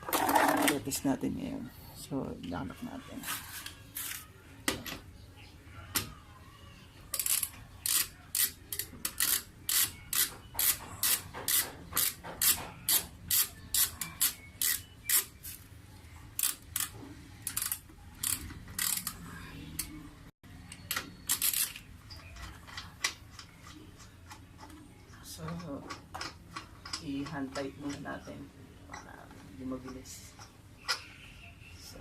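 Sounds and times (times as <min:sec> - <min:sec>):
torque wrench ratcheting clicks: 0:07.2 - 0:15.2, 0:17.5 - 0:19.2.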